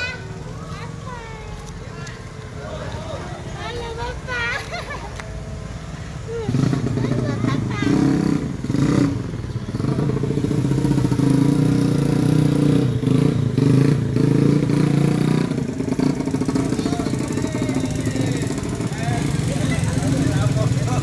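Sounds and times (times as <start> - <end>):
vehicle engine running: 0.0 - 21.0.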